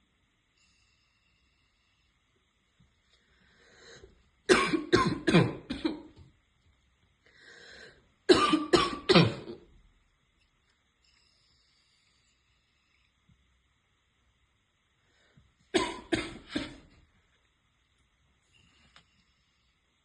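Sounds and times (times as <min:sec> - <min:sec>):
woman coughing: 0:04.5 - 0:06.2, 0:08.3 - 0:09.6, 0:15.8 - 0:16.9
breath in: 0:07.2 - 0:08.0.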